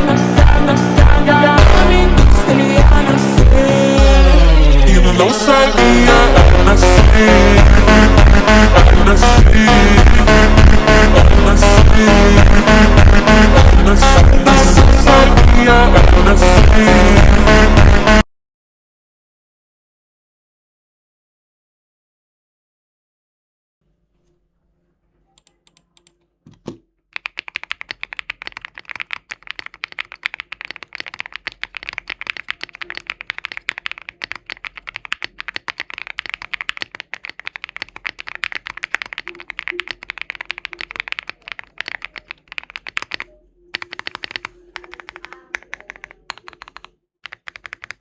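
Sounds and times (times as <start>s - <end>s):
typing on mechanical keyboard: 25.4s - 48.0s.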